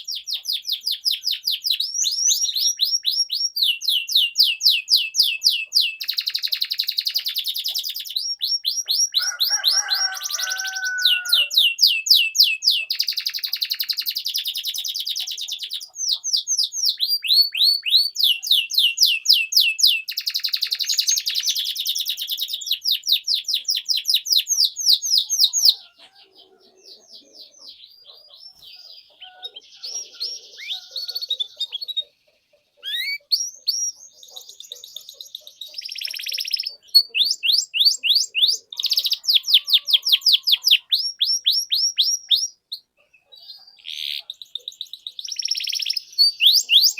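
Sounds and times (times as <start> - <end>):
canary singing trills: 0.0 - 46.9.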